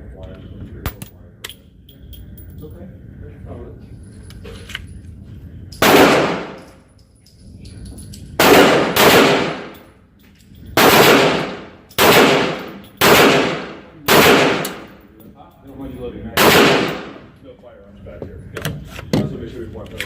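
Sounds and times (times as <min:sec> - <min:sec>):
pistol shots echoing: 0:05.8 - 0:06.7, 0:08.4 - 0:09.8, 0:10.8 - 0:15.0, 0:16.4 - 0:17.3.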